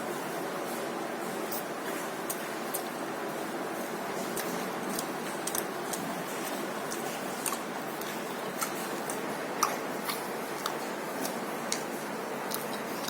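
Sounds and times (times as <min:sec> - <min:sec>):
person chewing: 0:01.5 - 0:03.0, 0:04.1 - 0:13.0.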